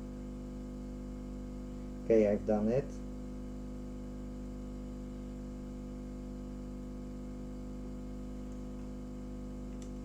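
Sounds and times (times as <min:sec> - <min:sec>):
electrical hum: 0:00.0 - 0:10.0.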